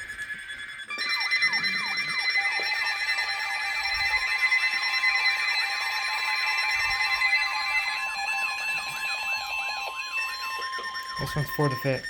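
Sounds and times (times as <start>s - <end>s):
falling chirp: 0.0s - 4.3s
steady beeping alarm tones: 0.0s - 12.0s.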